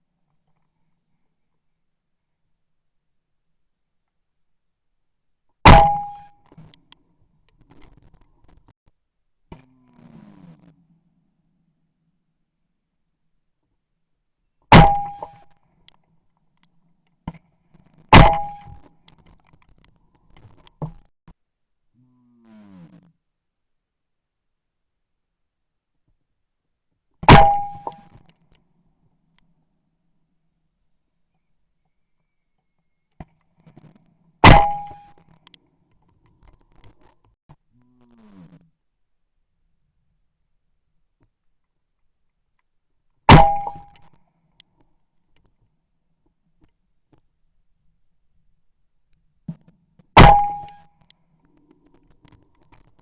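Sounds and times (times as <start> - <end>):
shotgun shots: 5.7 - 6.3, 14.7 - 15.4, 18.2 - 18.8, 27.3 - 28.1, 34.4 - 35.0, 43.3 - 44.0, 50.2 - 50.8.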